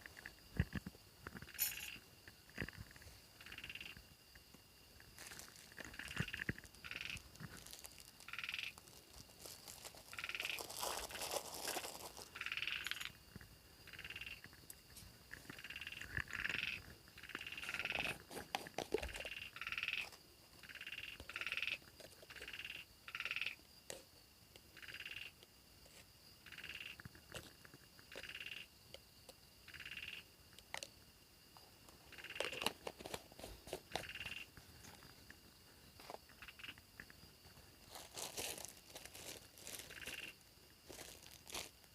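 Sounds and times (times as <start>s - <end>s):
frogs calling: 0.0s - 24.0s, 24.6s - 25.4s, 26.3s - 41.9s
clicks and crackles: 32.2s - 35.4s.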